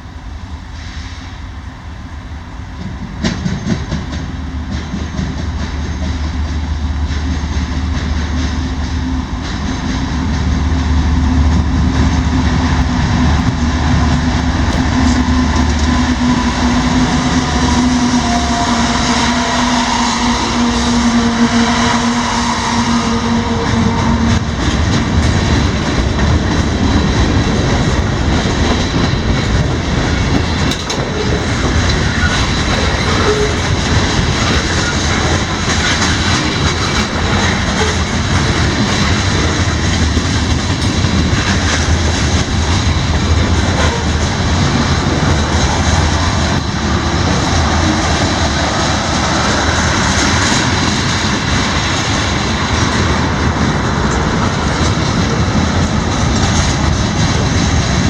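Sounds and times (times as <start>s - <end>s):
freight train rumbling past: 0.0s - 58.0s.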